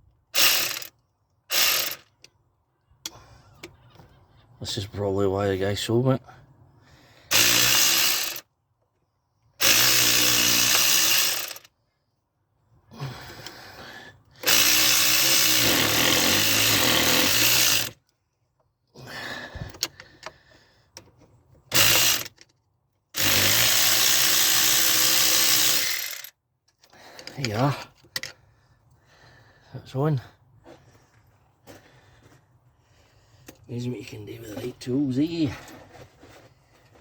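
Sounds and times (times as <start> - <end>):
power tool running: 0.4 - 0.9, 1.5 - 2.1, 7.3 - 8.4, 9.6 - 11.7, 14.4 - 18.0, 21.7 - 22.3, 23.2 - 26.3.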